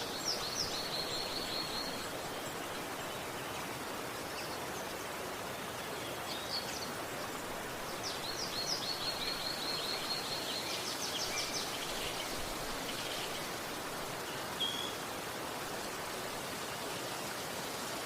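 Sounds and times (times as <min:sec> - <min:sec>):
small birds chirping: 0:00.0 - 0:15.0
river water rushing: 0:00.0 - 0:18.0.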